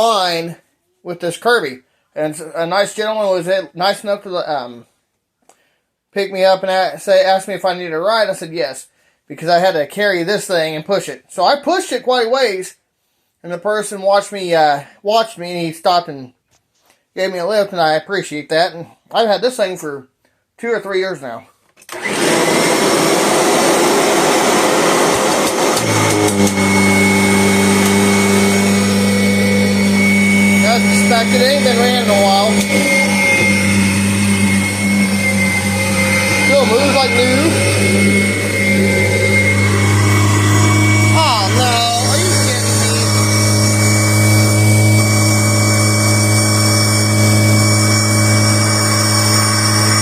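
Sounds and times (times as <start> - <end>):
upright vacuum running: 21.9 - 50.0
clicks: 27.8 - 28.0.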